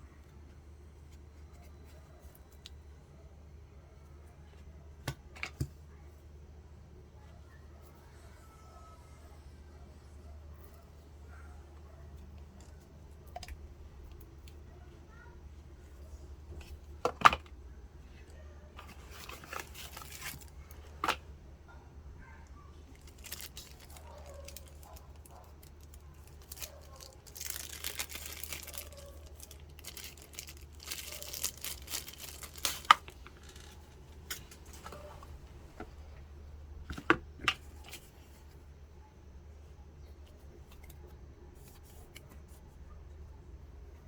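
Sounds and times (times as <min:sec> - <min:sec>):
material rustling and tearing: 0:23.0 - 0:33.9.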